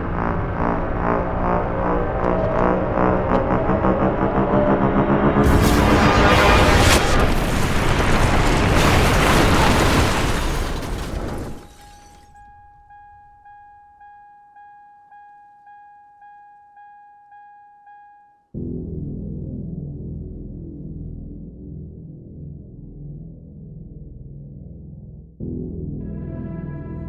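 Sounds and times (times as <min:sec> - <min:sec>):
blast-like roar: 0:03.6 - 0:10.4.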